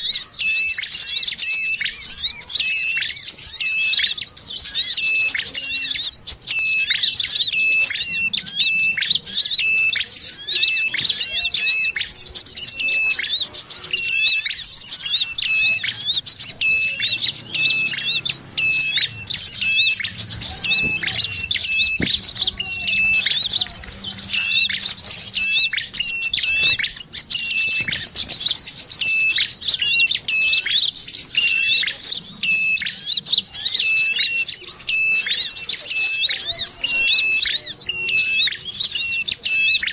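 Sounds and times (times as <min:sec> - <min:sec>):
small birds chattering: 0:00.0 - 0:39.9
clear repeating bird note: 0:12.7 - 0:30.8.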